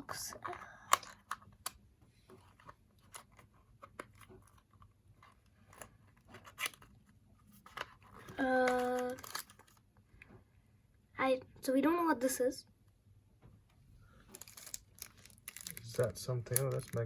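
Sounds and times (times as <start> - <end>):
plastic crinkling: 3.0 - 9.8, 14.3 - 17.0
small plastic clicks: 8.6 - 9.8, 14.3 - 17.0.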